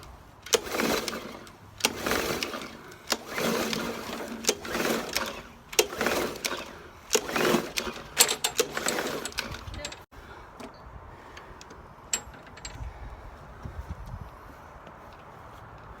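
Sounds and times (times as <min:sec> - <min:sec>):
mower pull-starter engine cranking: 0:00.0 - 0:10.1.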